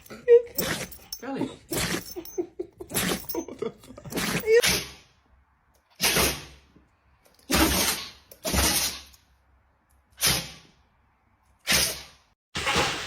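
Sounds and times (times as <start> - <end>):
dog sneezing: 7.5 - 9.1, 10.2 - 10.7, 11.6 - 12.2.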